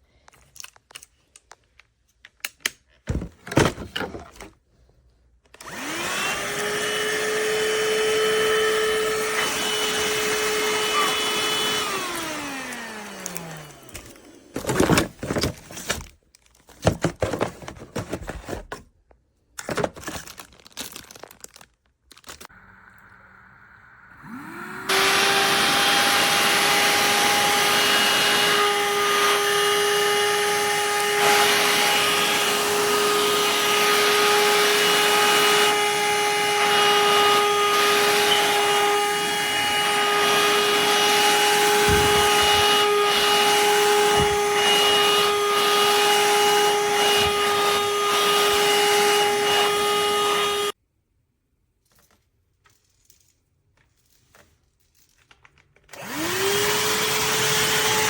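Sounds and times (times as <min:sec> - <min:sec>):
handheld vacuum cleaner whine: 0:05.5 - 0:15.5, 0:22.5 - 0:50.8, 0:55.9 - 0:58.0
handling clatter and rubbing: 0:14.5 - 0:18.8, 0:41.6 - 0:45.6.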